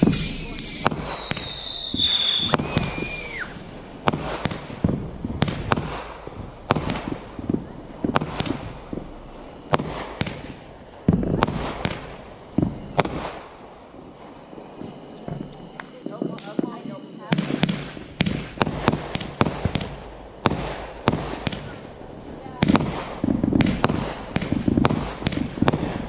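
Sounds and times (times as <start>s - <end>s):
falling firework whistles: 0.0s - 7.2s
fireworks bangs: 0.0s - 26.0s.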